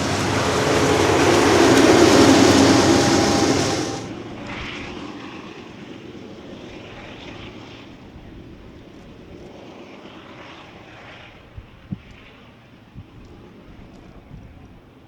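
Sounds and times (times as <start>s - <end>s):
train wheels rumbling on rails: 0.0s - 5.1s.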